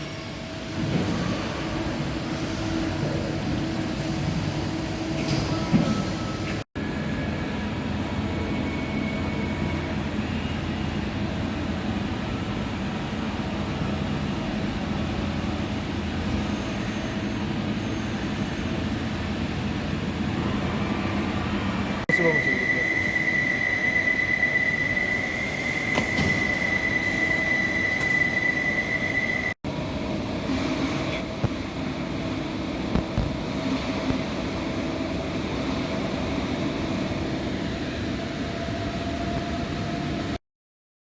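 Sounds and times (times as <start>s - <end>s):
machining centre humming: 0.0s - 40.4s.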